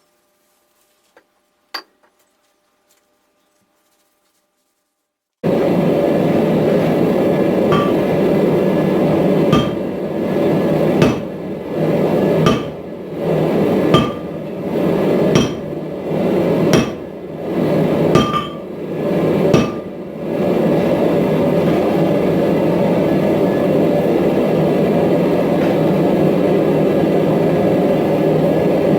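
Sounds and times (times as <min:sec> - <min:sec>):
hammer striking steel on anvil: 0:07.7 - 0:08.4, 0:09.4 - 0:10.0, 0:10.9 - 0:11.4, 0:12.4 - 0:12.9, 0:13.8 - 0:14.5, 0:15.3 - 0:15.8, 0:16.7 - 0:17.2, 0:18.1 - 0:18.8, 0:19.5 - 0:20.0.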